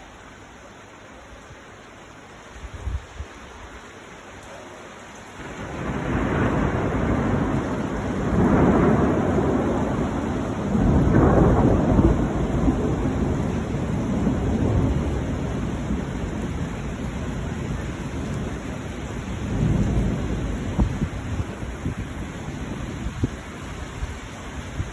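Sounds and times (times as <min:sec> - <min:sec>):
steady rain: 0:00.0 - 0:24.9
thunder rumbling: 0:05.4 - 0:24.9.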